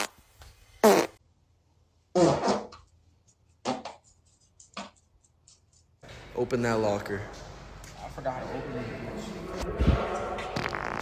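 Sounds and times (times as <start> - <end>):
fart sounds: 0.0 - 0.2, 0.8 - 1.2, 2.1 - 2.9, 9.8 - 11.0.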